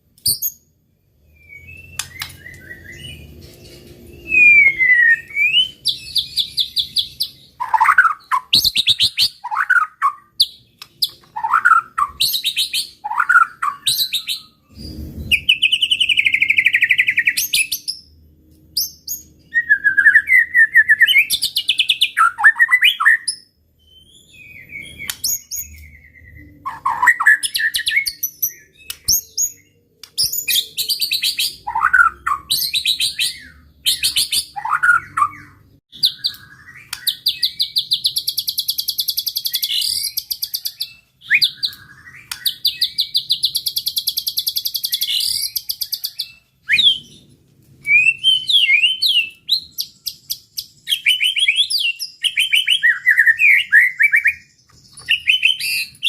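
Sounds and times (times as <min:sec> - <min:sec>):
songbird singing varied song: 0:00.1 - 0:56.0.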